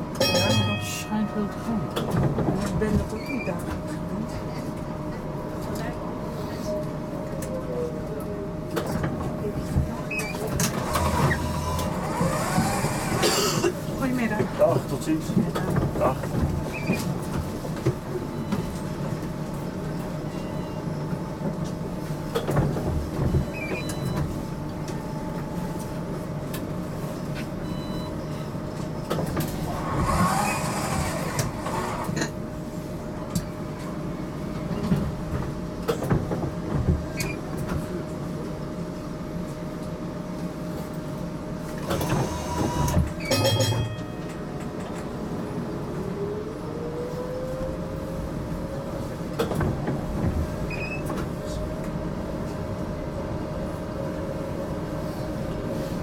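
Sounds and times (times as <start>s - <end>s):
tram rumbling on rails: 0.0s - 56.0s
tram motor whine rising: 10.6s - 13.4s, 23.5s - 34.8s, 41.8s - 50.8s.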